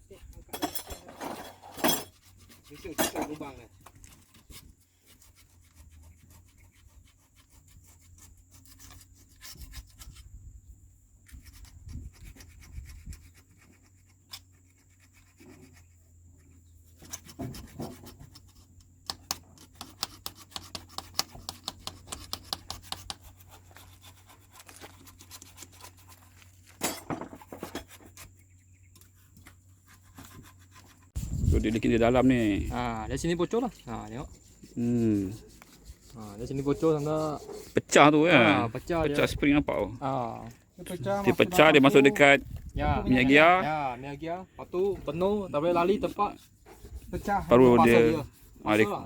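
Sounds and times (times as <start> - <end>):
metal tools scraping on metal: 0.4 - 4.5, 26.0 - 28.3.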